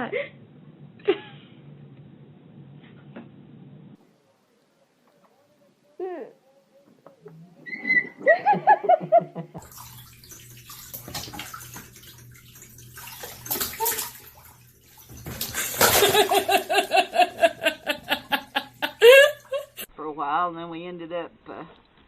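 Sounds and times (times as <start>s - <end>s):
water splashing in a bathtub: 9.6s - 19.9s.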